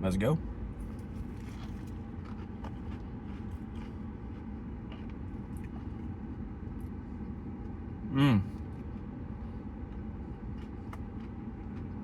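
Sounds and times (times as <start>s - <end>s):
steady low rumble: 0.0s - 12.0s
crunchy chewing: 0.8s - 6.2s, 9.9s - 12.0s.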